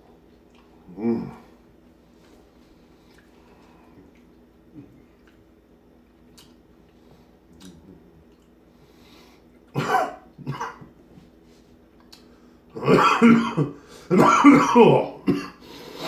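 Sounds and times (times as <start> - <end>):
wet chewing: 6.2 - 8.6
loud coughs: 9.8 - 10.9, 12.8 - 15.6.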